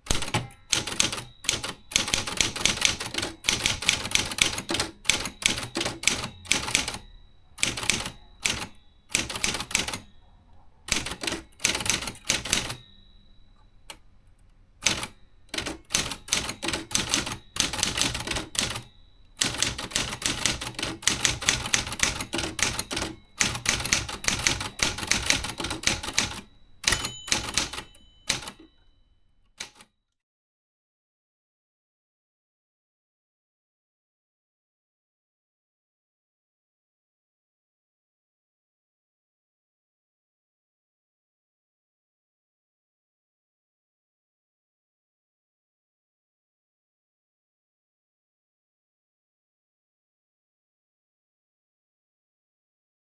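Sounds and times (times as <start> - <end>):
manual typewriter key strikes: 0.0 - 10.1, 10.9 - 13.0, 14.8 - 28.8.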